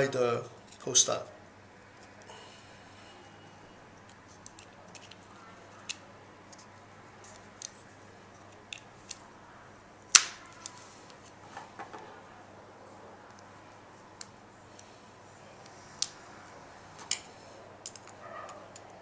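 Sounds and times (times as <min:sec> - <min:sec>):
light clicks and taps of tools: 0:04.0 - 0:09.2, 0:17.0 - 0:19.0.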